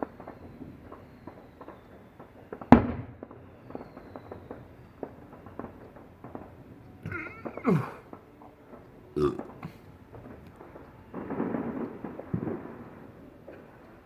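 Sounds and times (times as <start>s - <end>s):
firework crackling pops: 0.0s - 14.0s
firework bang: 2.6s - 7.6s, 11.1s - 13.1s.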